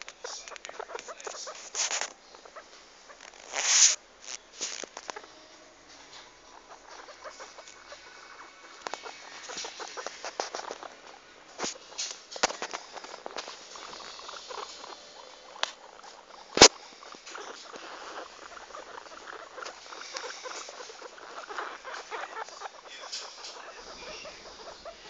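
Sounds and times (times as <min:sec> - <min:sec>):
guinea pigs moving about: 0:00.0 - 0:25.0.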